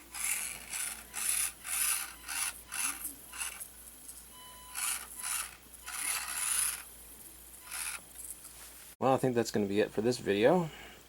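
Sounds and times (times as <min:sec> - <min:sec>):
small motor rasping throttle bursts: 0:00.0 - 0:03.6, 0:04.7 - 0:06.9, 0:07.6 - 0:08.0.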